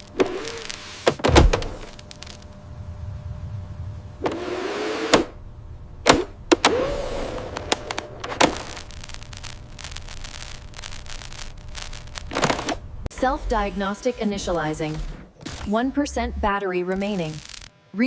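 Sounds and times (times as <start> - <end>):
small electric motor whirring: 6.6 - 12.4, 16.9 - 17.7.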